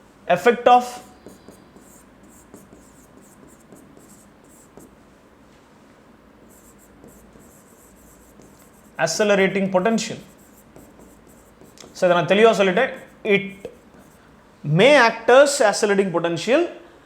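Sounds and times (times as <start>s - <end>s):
pen scratching handwriting: 0.8s - 4.9s, 6.5s - 14.2s.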